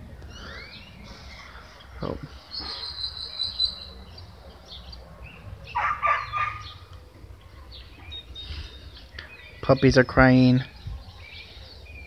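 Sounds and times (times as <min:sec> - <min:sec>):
low outdoor rumble: 0:00.0 - 0:09.7
thin high chirp: 0:02.5 - 0:04.0
puppies crying: 0:05.4 - 0:06.9.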